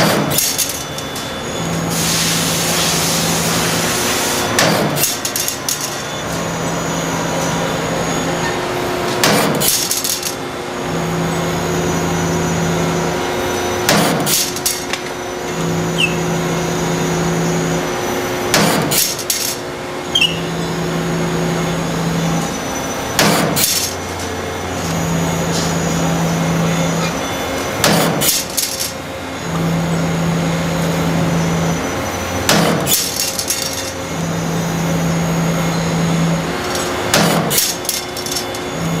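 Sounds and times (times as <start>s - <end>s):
machine humming: 0.0s - 39.0s
sharp machine knocks: 4.5s - 5.3s, 9.2s - 9.9s, 13.8s - 14.6s, 18.5s - 19.2s, 23.2s - 23.9s, 27.8s - 28.5s, 32.5s - 33.2s, 37.1s - 37.8s.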